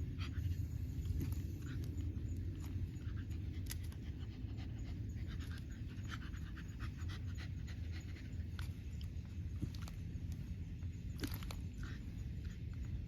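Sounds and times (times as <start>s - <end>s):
dog panting: 0.0s - 9.7s.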